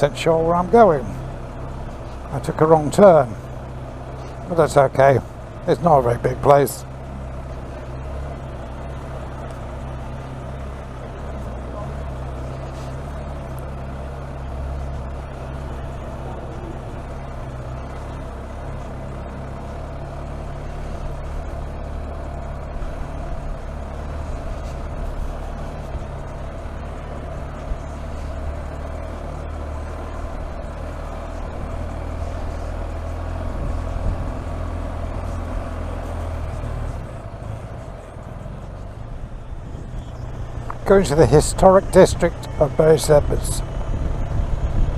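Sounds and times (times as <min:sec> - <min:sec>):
motorcycle engine running: 0:00.0 - 0:44.9
road and wind noise: 0:00.0 - 0:44.9.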